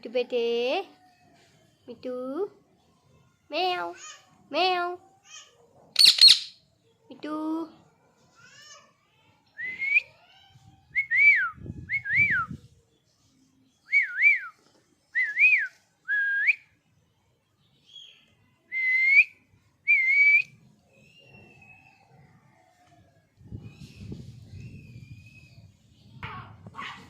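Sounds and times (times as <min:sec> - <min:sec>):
parrot whistling: 0:06.0 - 0:06.5.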